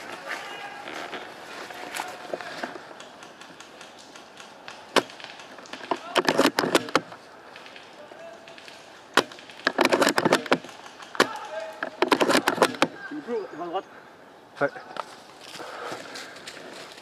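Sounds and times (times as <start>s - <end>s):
rifle bolt clicking and knocking: 2.9s - 7.8s, 8.5s - 13.0s.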